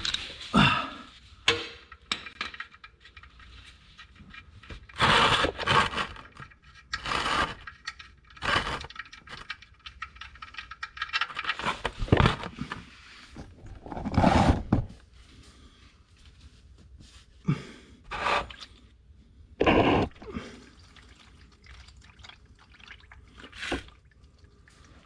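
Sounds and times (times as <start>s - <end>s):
hand tools scraping and clinking: 1.5s - 14.8s.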